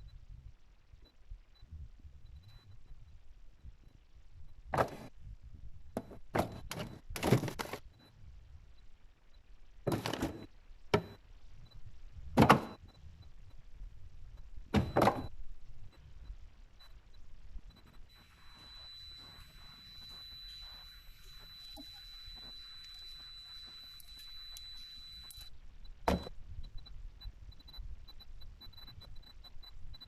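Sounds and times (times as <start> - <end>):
knocks and thuds in refrigerator: 9.9 - 11.1, 12.4 - 12.8, 14.7 - 15.3.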